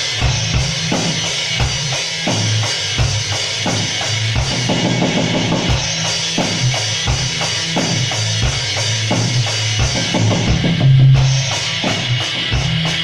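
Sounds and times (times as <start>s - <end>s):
drum kit beat: 0.0s - 13.0s
bass drum hits: 7.9s - 12.8s.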